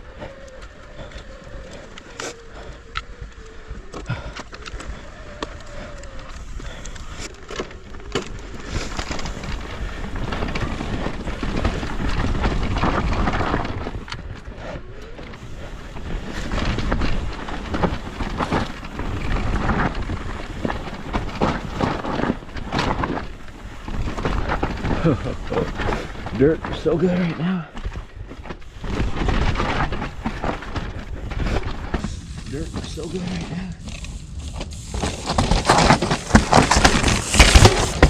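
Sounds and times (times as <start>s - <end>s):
tyres crunching on dirt: 0.0s - 38.0s
bike knocks and rattles: 1.0s - 27.2s, 27.8s - 38.0s.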